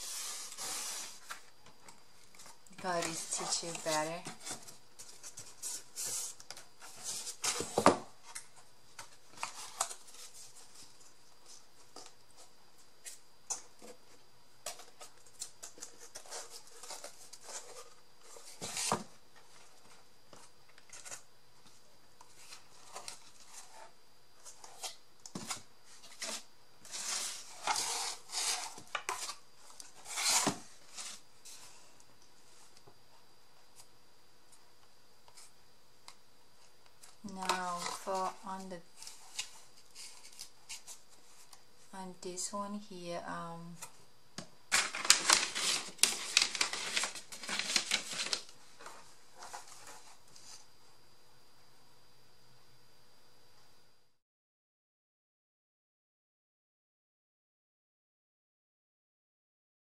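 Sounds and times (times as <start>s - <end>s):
paper rustling and scraping: 0.0s - 13.2s, 14.6s - 31.8s, 37.0s - 41.6s, 44.7s - 50.6s.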